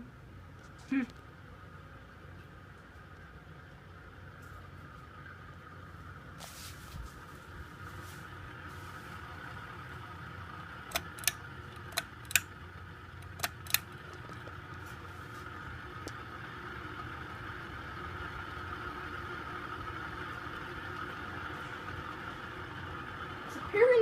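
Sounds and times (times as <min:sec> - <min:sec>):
ceiling fan whirring: 0:00.0 - 0:24.0
sharp clicks: 0:10.9 - 0:12.5, 0:13.2 - 0:14.3.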